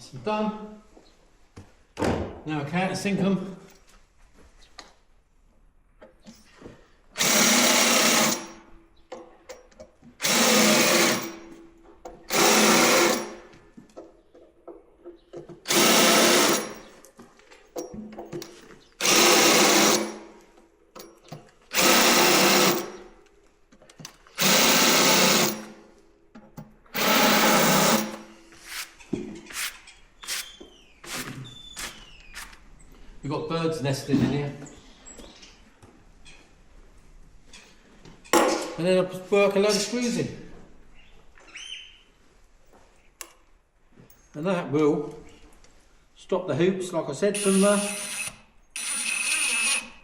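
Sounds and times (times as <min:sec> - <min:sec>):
power drill bursts: 0:07.2 - 0:08.6, 0:10.2 - 0:11.5, 0:12.3 - 0:13.5, 0:15.7 - 0:17.0, 0:19.0 - 0:20.4, 0:21.7 - 0:23.1, 0:24.3 - 0:25.8, 0:26.9 - 0:28.9, 0:29.6 - 0:32.6, 0:47.3 - 0:50.0.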